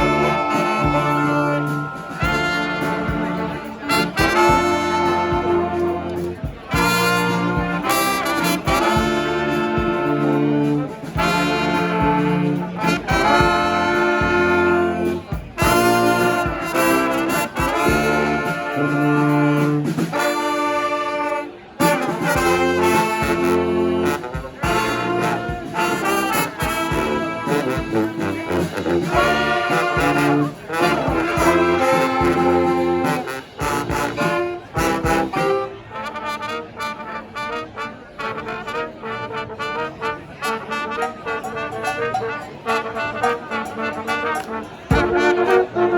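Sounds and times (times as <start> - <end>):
brass band playing: 0.0 - 45.9.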